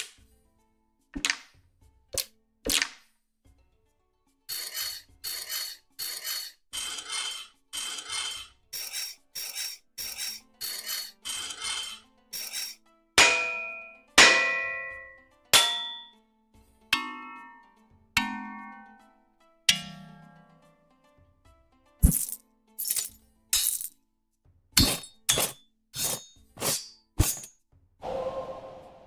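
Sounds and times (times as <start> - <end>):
sword blade sharpening scrapes: 4.5 - 12.8, 24.8 - 27.5
metal hits on a shield: 13.2 - 15.0, 15.6 - 16.1.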